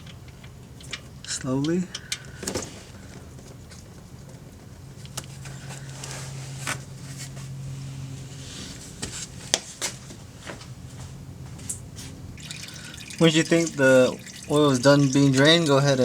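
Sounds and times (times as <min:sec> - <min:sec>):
steady low hum: 0:00.0 - 0:16.0
oil draining into a pan: 0:12.4 - 0:16.0.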